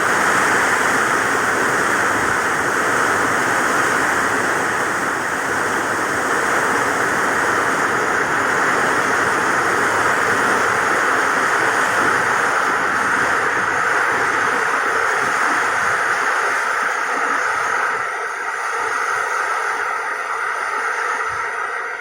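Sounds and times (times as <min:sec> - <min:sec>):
heavy rain pouring: 0:00.0 - 0:21.9.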